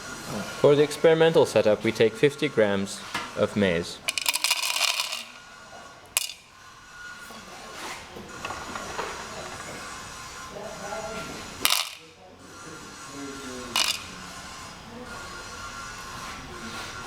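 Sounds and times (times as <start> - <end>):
maize kernels rattling: 4.1 - 5.4, 11.6 - 12.1, 13.7 - 14.2.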